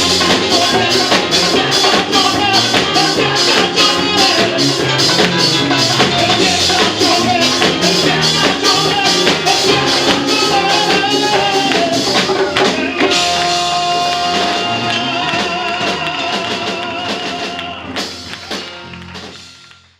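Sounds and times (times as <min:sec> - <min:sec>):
person singing: 0:00.0 - 0:18.2
percussive beat: 0:00.0 - 0:19.6
band playing worship song: 0:00.0 - 0:19.9.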